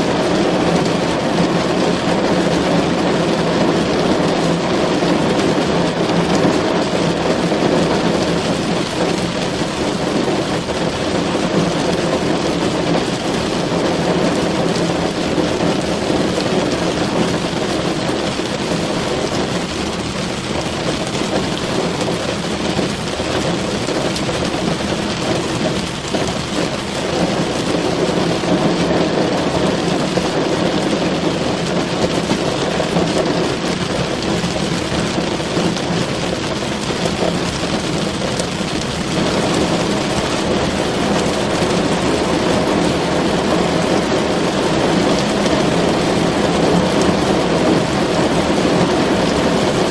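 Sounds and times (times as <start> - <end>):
heavy rain on car roof: 0.0 - 49.9.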